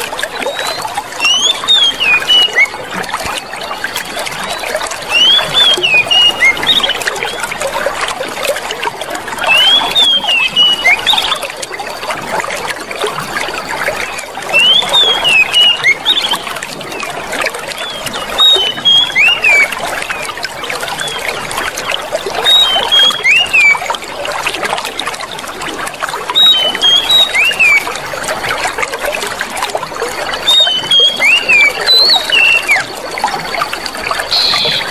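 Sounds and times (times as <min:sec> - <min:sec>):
water trickling and babbling: 0:00.0 - 0:34.9
bird chirping: 0:00.4 - 0:02.7, 0:04.0 - 0:07.4, 0:09.5 - 0:11.4, 0:14.5 - 0:16.5, 0:17.8 - 0:20.2, 0:22.4 - 0:23.8, 0:26.4 - 0:27.8, 0:30.5 - 0:32.9, 0:34.3 - 0:34.9.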